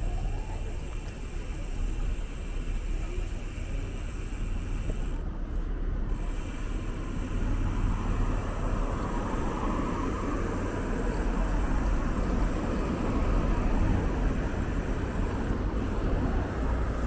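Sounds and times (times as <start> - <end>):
city street traffic rumble: 0.0 - 17.0.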